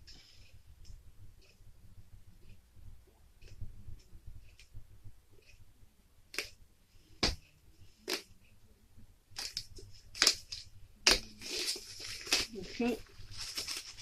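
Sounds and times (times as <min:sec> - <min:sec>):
plastic packaging crackling: 0:09.4 - 0:14.0.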